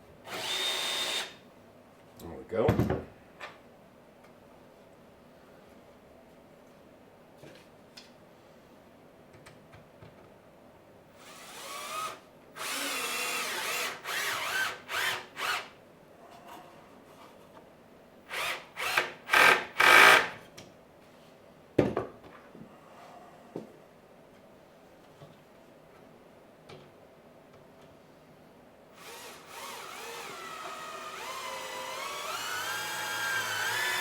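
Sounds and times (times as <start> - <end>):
power drill driving screws: 0.3 - 1.4, 11.2 - 15.7, 18.3 - 20.4, 29.0 - 34.0.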